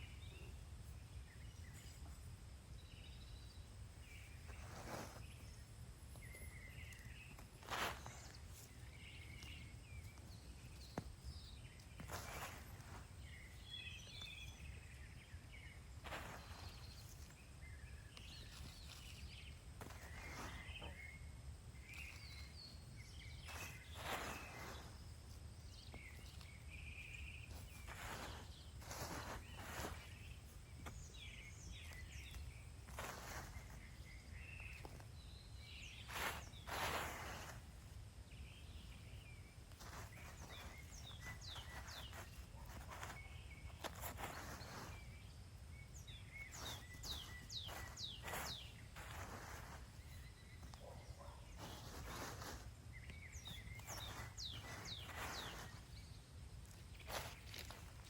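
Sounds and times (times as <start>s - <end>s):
hands digging through soil: 4.0s - 58.0s.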